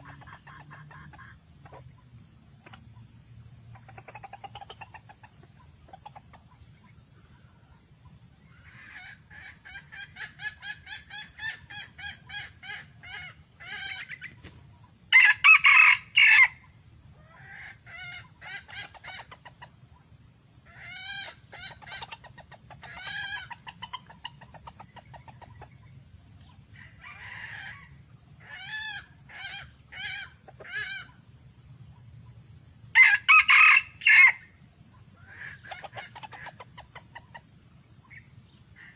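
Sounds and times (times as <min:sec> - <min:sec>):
junglefowl clucking: 0:00.0 - 0:02.8, 0:03.7 - 0:31.3, 0:33.0 - 0:38.9
rooster crowing: 0:15.1 - 0:16.6, 0:33.0 - 0:34.4.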